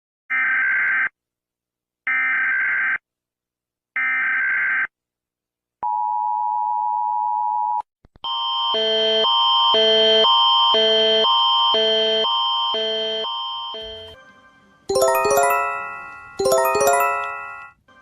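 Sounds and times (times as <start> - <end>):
alarm of alternating tones: 8.3 - 14.2, 14.9 - 17.8
two-tone attention signal: 13.7 - 14.2.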